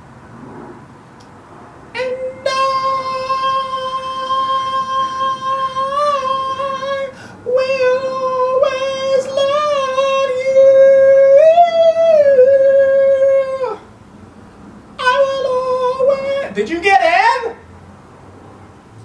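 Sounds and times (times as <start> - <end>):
man singing in falsetto: 2.0 - 13.9, 15.0 - 17.6.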